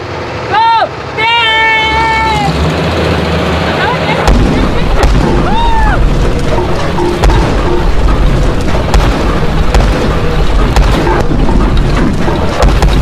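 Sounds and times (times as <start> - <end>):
road roller rumbling: 0.0 - 13.0
tubes cracking and popping: 4.3 - 13.0.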